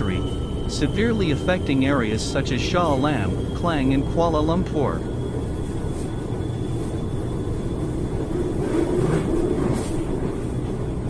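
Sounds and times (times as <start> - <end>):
faint wavering tone: 0.0 - 8.2.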